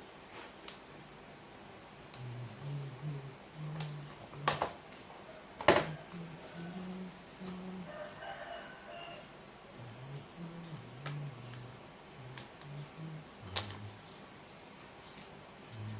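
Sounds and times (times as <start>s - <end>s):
rooster crowing: 5.2s - 9.6s.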